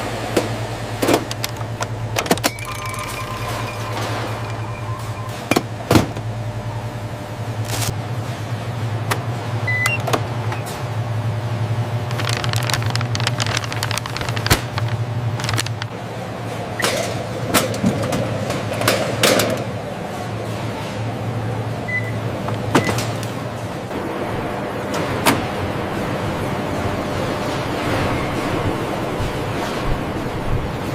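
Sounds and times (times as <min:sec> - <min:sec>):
factory machinery humming: 0:00.0 - 0:30.9.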